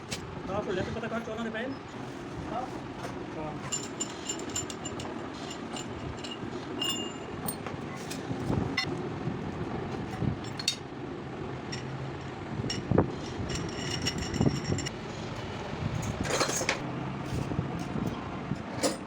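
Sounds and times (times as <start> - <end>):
steady background hum: 0.0 - 19.0
metallic clinks and taps: 3.7 - 7.8.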